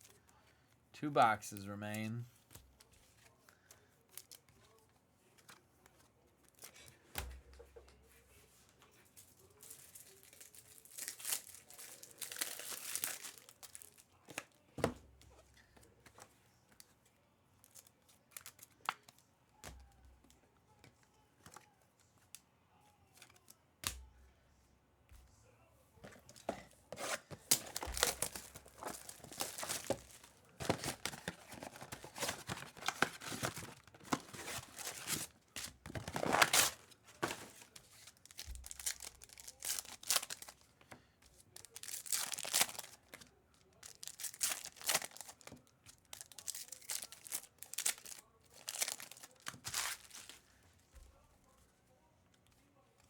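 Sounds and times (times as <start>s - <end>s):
card pack wrappers tearing and crinkling: 9.4s - 14.5s, 26.4s - 40.6s, 41.5s - 50.4s.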